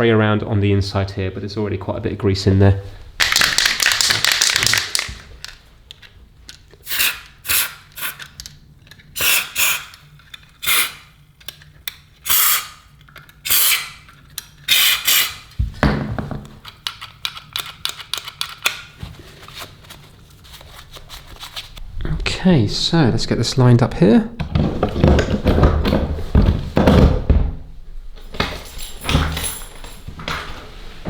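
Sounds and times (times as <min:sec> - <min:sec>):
lock parts clicking and rattling: 0:03.2 - 0:06.8, 0:16.4 - 0:19.0, 0:28.2 - 0:30.6
aerosol can spraying: 0:06.8 - 0:08.2, 0:09.2 - 0:10.0, 0:10.6 - 0:11.1, 0:12.3 - 0:12.8, 0:13.5 - 0:14.0, 0:14.7 - 0:15.4.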